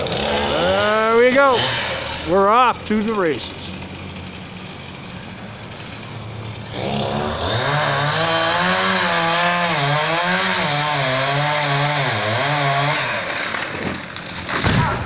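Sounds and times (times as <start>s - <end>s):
chainsaw cutting wood: 0.0s - 15.0s.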